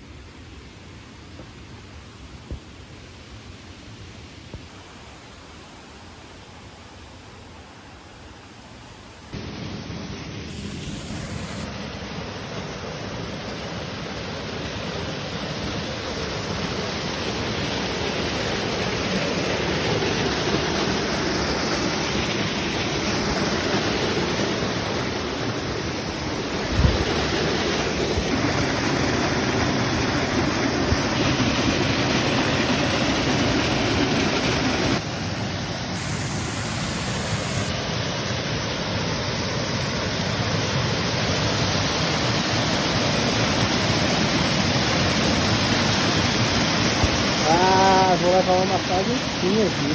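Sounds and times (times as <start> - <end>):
waterfall rushing: 9.4 - 35.7, 40.1 - 49.9.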